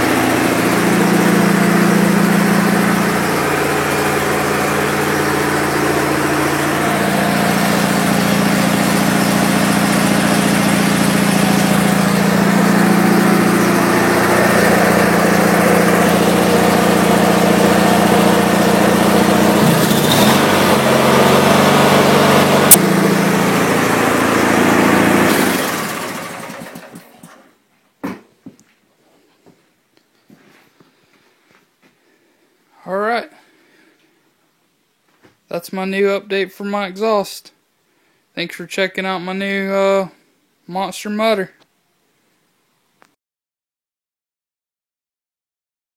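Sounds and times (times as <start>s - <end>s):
lawn tractor engine running: 0.0s - 27.5s.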